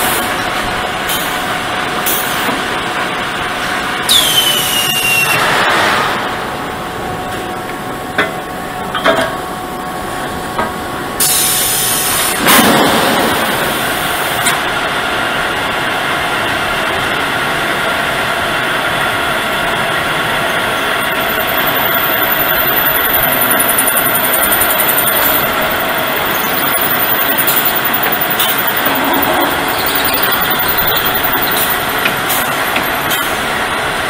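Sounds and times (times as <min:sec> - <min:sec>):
drilling machine humming: 0:19.2 - 0:34.0
machine clicks: 0:21.3 - 0:33.4.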